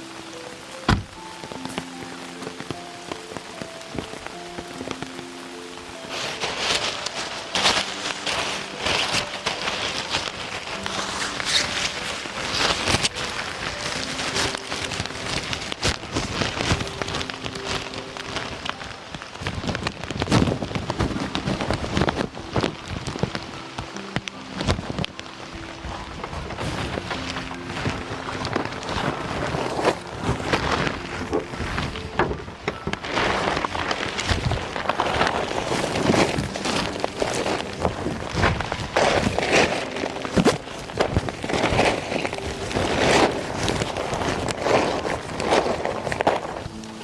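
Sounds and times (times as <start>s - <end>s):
rain pattering: 0.0s - 47.0s
soft slow background music: 0.0s - 47.0s.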